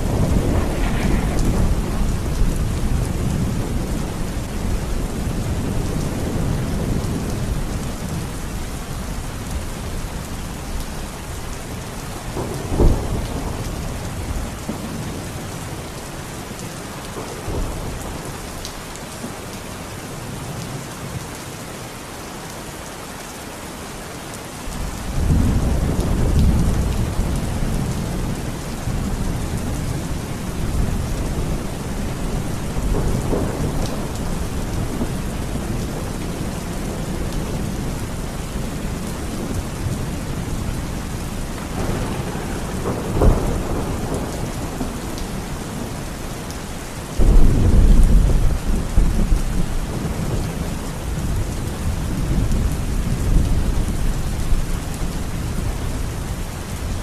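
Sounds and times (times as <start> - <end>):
sharp thunderclap: 0.0 - 4.1, 47.2 - 50.3
thunder rumbling: 0.0 - 8.3, 24.7 - 46.5, 47.2 - 56.1
heavy rain: 0.0 - 57.0.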